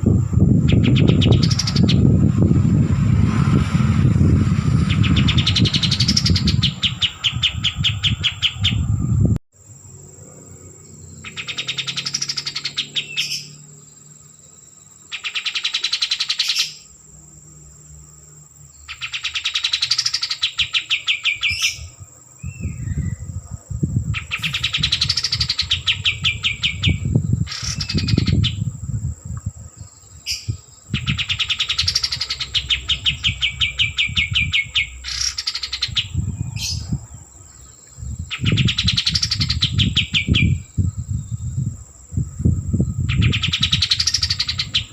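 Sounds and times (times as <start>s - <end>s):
songbird singing trilled phrases: 0.0s - 2.4s, 4.8s - 9.8s, 10.4s - 17.1s, 17.8s - 44.9s
high thin whine: 0.0s - 6.8s
low rumbling noise: 0.0s - 12.1s, 21.8s - 44.9s.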